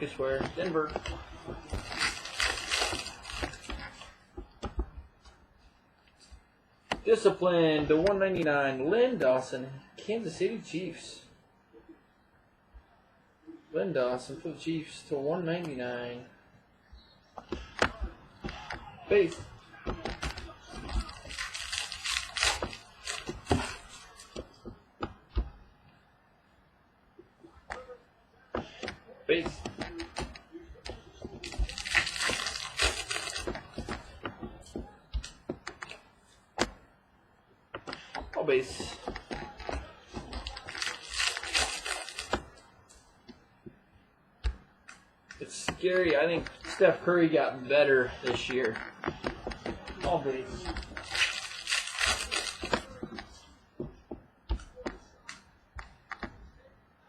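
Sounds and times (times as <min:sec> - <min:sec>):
trading cards rustling and clicking: 0:00.0 - 0:05.4, 0:17.4 - 0:25.6, 0:28.6 - 0:36.0, 0:37.8 - 0:43.0, 0:44.5 - 0:53.9.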